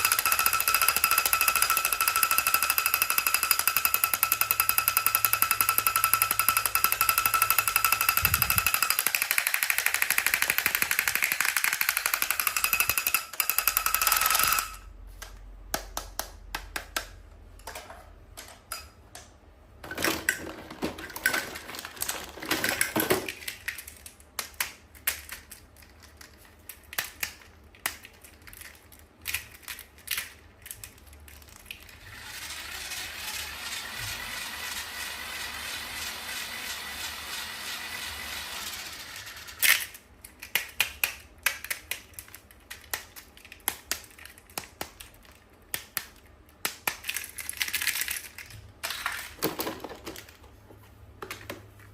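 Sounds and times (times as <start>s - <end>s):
rapid buzzing rattle: 0.0s - 14.7s
small clicks of plastic pieces: 20.2s - 32.0s, 39.2s - 50.5s.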